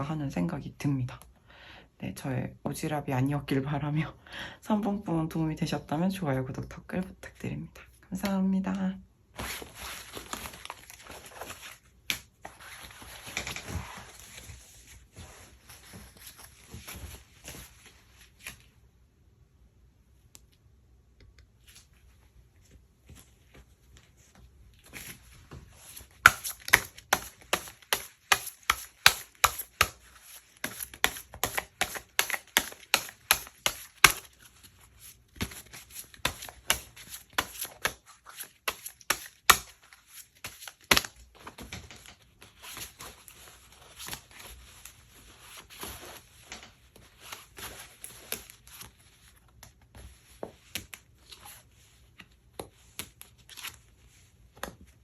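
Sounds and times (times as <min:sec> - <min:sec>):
cards slapping while shuffled: 0:24.8 - 0:49.0, 0:49.6 - 0:53.8.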